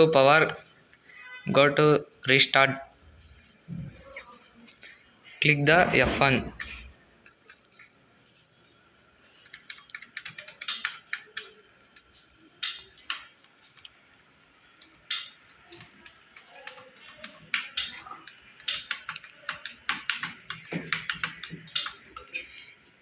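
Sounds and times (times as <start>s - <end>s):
keyboard keys clicking: 9.4s - 13.9s, 14.8s - 22.4s.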